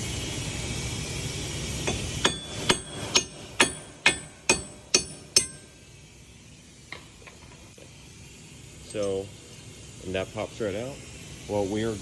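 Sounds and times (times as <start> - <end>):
hammer blows on metal: 1.9 - 5.8.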